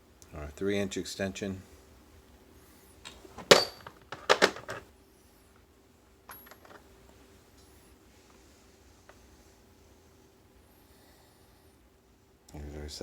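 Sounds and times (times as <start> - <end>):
metal tools clinking in case: 3.4 - 4.8, 6.3 - 6.8.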